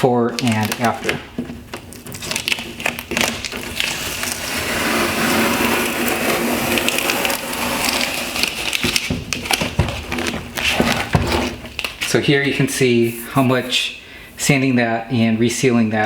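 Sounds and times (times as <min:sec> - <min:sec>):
tape peeling off plastic: 0:00.4 - 0:12.2.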